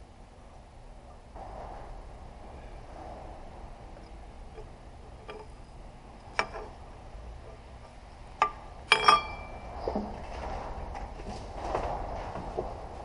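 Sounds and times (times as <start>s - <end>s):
metal parts clinking: 8.9s - 9.6s.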